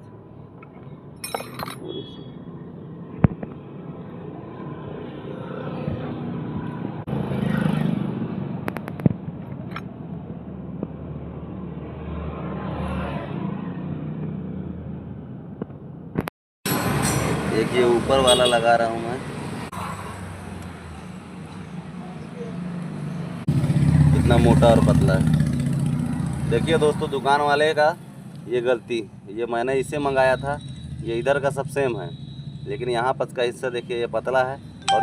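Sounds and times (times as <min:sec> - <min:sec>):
motor traffic passing: 0:19.2 - 0:27.2.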